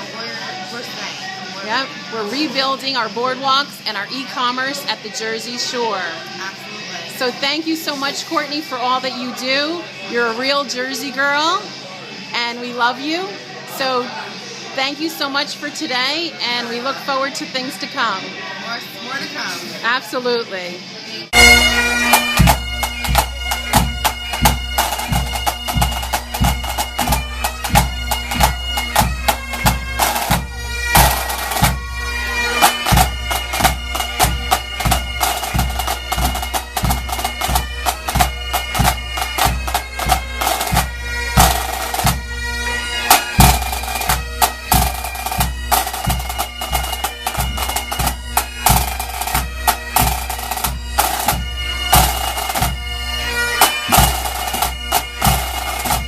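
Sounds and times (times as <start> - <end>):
bagpipes playing melody: 21.3 - 56.0
drum beat: 21.4 - 42.4, 43.1 - 52.9, 53.6 - 56.0.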